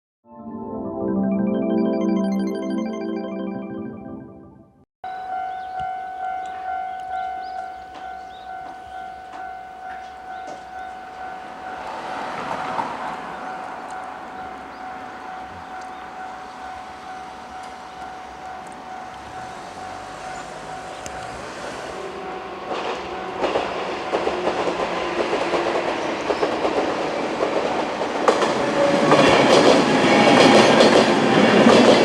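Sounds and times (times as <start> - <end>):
level crossing warning bell: 5.1 - 25.2
electric train rumbling: 6.2 - 32.0.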